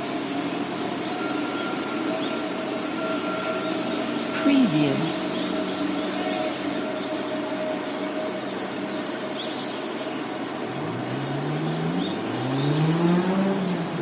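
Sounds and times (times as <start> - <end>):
hum of passing traffic: 0.0 - 14.0
car engine accelerating: 10.7 - 14.0.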